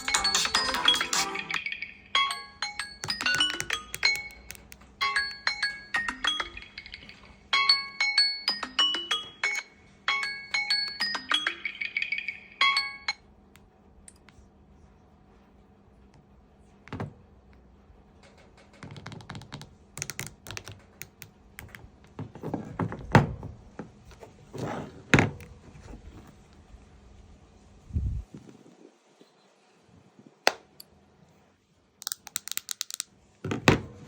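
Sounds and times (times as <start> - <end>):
marimba phone ringtone: 0.0 - 13.2
smartphone being handled: 3.0 - 7.3, 18.8 - 22.7, 32.0 - 34.0.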